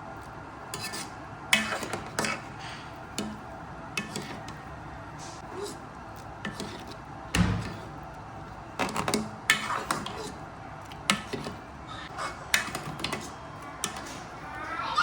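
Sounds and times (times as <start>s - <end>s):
utensils clinking against pot: 12.2s - 14.3s.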